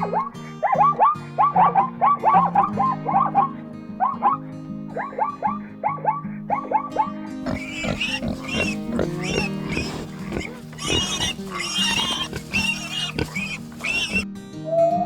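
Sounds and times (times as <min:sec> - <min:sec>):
background music: 0:07.4 - 0:14.2
pig squealing: 0:07.4 - 0:14.2.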